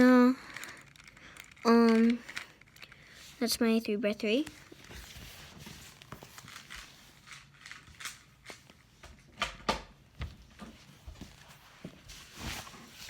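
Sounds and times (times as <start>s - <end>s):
plastic clicks and rustles: 0.0s - 3.2s, 4.4s - 9.8s.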